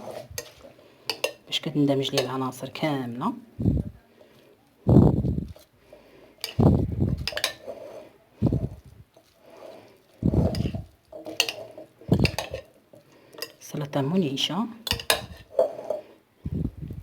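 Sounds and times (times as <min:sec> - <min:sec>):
spoon scraping against bowl: 0:00.0 - 0:02.4, 0:06.4 - 0:13.6, 0:14.9 - 0:16.2.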